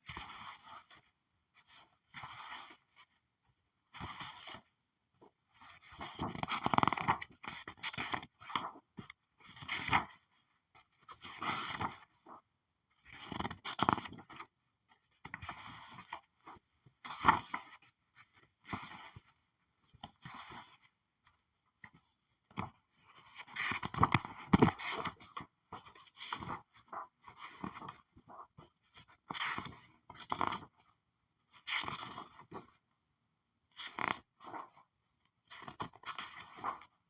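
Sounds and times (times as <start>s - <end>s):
paper pages flipping: 23.6s - 25.1s.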